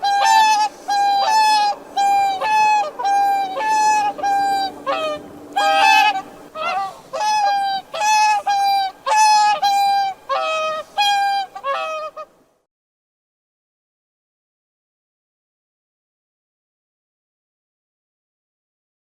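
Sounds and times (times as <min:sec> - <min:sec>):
swan honking: 0:00.0 - 0:12.4.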